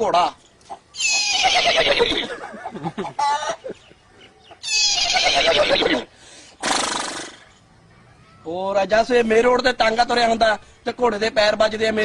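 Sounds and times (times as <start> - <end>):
man imitating horse whinny: 1.0 - 2.3, 4.6 - 7.4.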